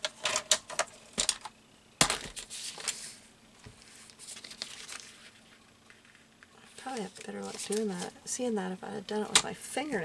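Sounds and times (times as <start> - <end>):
paper rustling: 2.0 - 8.1.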